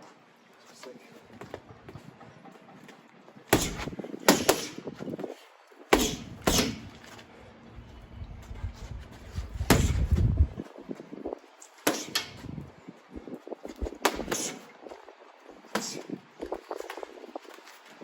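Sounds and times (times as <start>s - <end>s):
gloves thudding on punch bag: 3.6s - 4.8s, 6.0s - 6.9s, 9.7s - 10.1s
low rumble: 7.6s - 10.6s.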